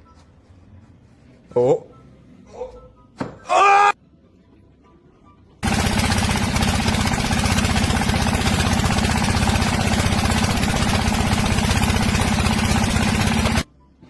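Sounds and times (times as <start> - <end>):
motor running with fast beat: 5.6 - 13.7.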